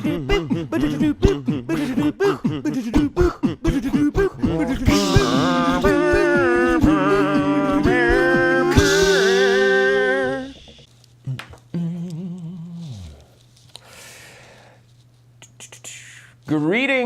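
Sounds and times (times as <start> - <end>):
beatboxed rhythm: 0.0 - 12.5, 15.4 - 16.4
held vocal chords: 0.0 - 13.2.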